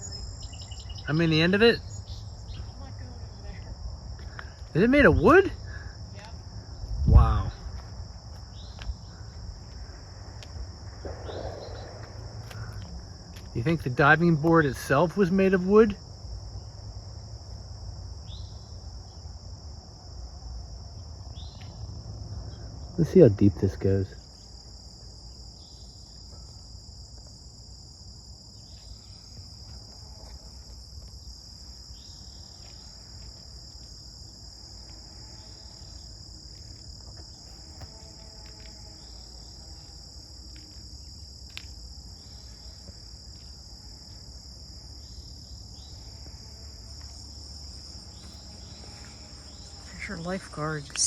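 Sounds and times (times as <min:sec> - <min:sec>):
crickets trilling: 0:00.0 - 0:51.0
faint low rumble: 0:05.8 - 0:14.5.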